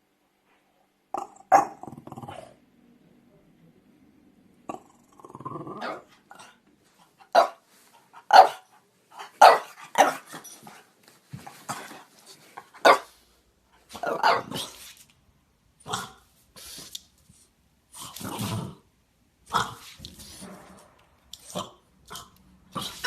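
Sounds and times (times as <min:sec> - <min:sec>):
dog growling: 0:01.1 - 0:02.6, 0:04.7 - 0:06.6, 0:17.9 - 0:18.9, 0:19.5 - 0:20.8, 0:21.4 - 0:23.0
dog barking: 0:07.3 - 0:07.6, 0:08.3 - 0:08.7, 0:09.3 - 0:10.3, 0:12.8 - 0:13.2, 0:14.0 - 0:14.7.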